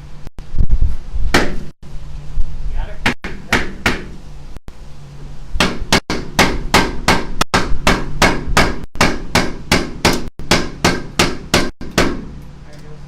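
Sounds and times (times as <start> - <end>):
rapid hammer blows: 3.0 - 4.2, 5.6 - 12.3.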